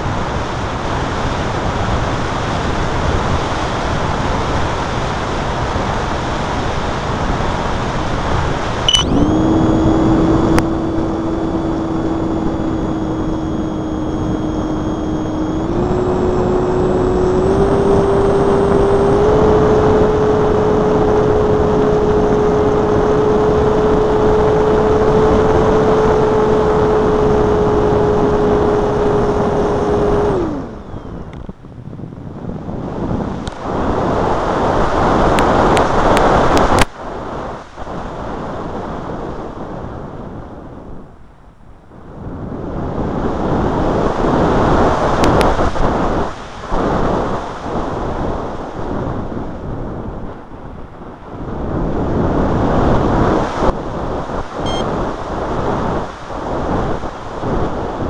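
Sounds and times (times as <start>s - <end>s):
airflow and wind noise: 0.0s - 58.0s
electric motor click: 8.9s - 20.3s
model plane electric motor running: 9.0s - 31.4s.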